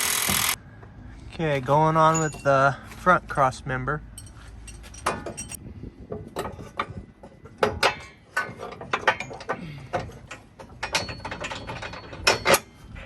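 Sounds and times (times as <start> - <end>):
metal clicks and clanks: 4.2 - 5.6, 6.2 - 13.0.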